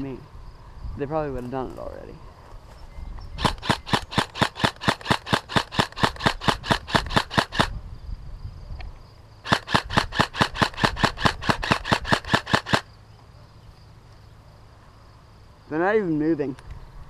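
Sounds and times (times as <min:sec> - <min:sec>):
airsoft rifle rapid shots: 0:03.4 - 0:07.7, 0:09.4 - 0:12.9.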